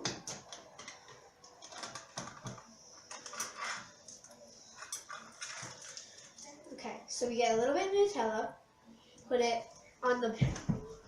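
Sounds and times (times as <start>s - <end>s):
kitchen items clicking and knocking: 0.0s - 4.0s.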